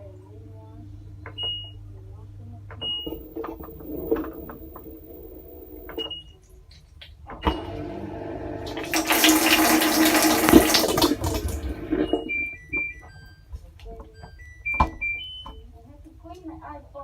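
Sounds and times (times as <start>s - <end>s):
water rushing into washing machine: 3.0s - 6.0s, 7.5s - 12.4s.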